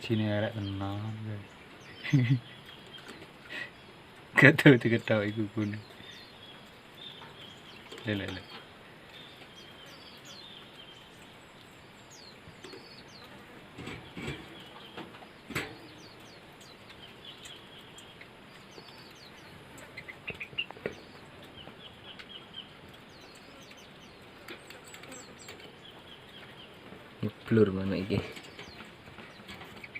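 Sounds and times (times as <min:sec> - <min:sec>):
bird chirping: 0:00.0 - 0:29.9
handling knocks and rustles: 0:12.2 - 0:17.6, 0:23.1 - 0:29.9.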